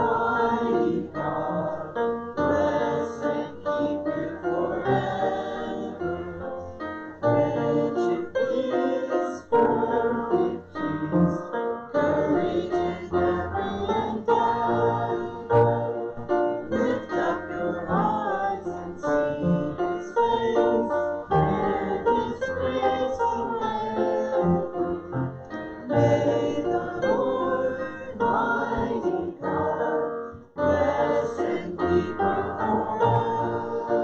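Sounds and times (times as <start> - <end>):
piano accompaniment: 0.0 - 34.0
person singing worship song: 16.6 - 25.0, 25.8 - 34.0.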